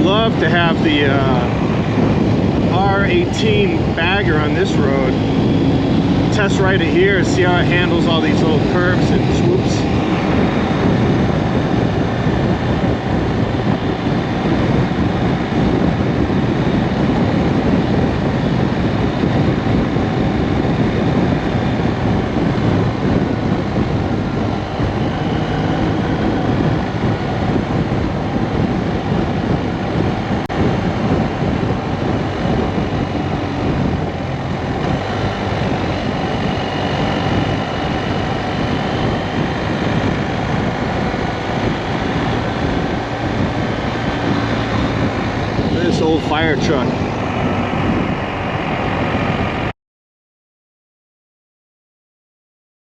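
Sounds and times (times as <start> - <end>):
motorcycle engine running: 0.0 - 49.7
wind buffeting microphone: 0.0 - 49.7.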